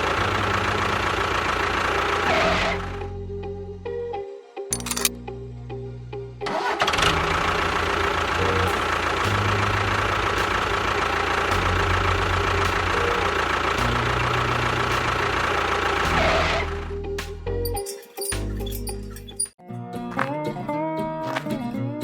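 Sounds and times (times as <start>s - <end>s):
background music: 2.8s - 6.6s, 19.6s - 22.0s.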